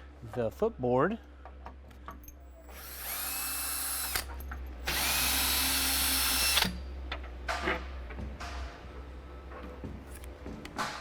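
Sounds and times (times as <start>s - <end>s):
power drill whining: 2.6s - 6.8s.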